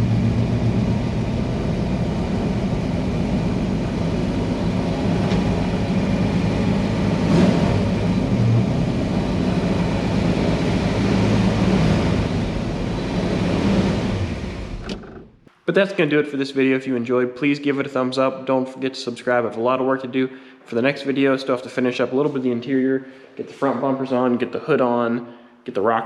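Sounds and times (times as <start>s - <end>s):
car engine running: 0.0s - 15.5s.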